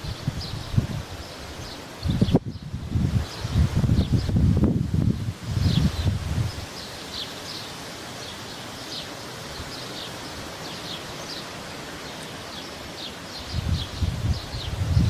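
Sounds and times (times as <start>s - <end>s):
small birds chirping: 0.0s - 4.5s, 5.1s - 15.0s
wind buffeting microphone: 0.0s - 6.7s, 13.4s - 15.0s
steady outdoor hiss: 0.0s - 15.0s.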